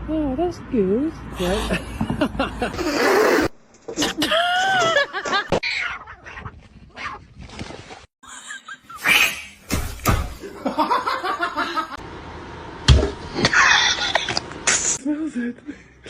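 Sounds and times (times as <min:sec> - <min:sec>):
person laughing: 0:04.0 - 0:05.5.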